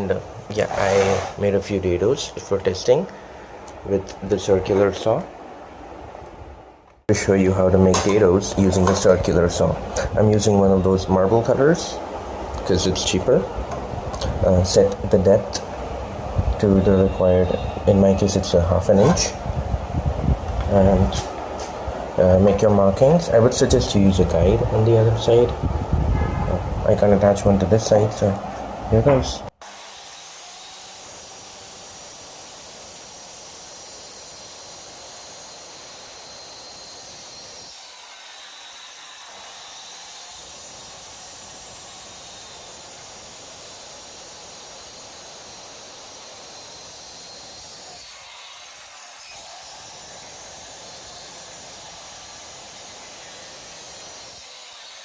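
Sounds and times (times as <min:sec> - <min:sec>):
circular saw cutting wood: 0:00.0 - 0:01.8, 0:29.6 - 0:55.0.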